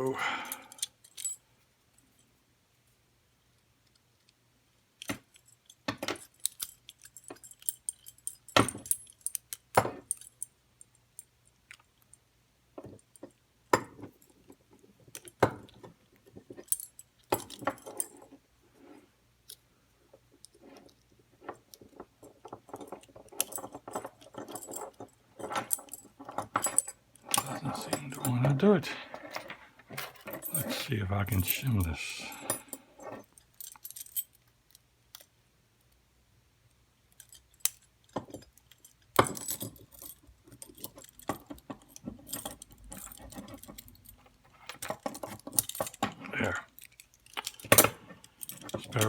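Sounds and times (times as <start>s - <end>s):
handcuffs clicking and jingling: 0.4s - 1.4s, 5.0s - 12.2s, 16.5s - 18.3s, 22.4s - 35.4s, 37.1s - 49.0s.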